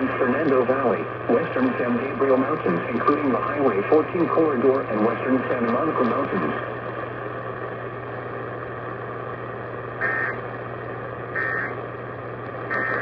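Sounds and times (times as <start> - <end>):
radio hiss with low hum: 0.0 - 13.0
burst-tone data squawks: 10.0 - 10.4, 11.4 - 11.8, 12.7 - 13.0.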